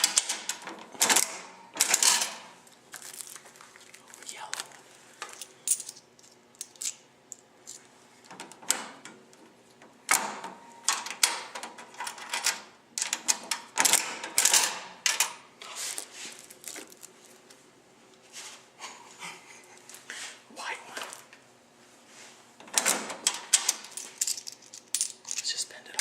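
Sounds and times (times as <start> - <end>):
vending machine clicks and clatters: 0.0 - 2.6, 10.0 - 15.5, 22.6 - 25.6.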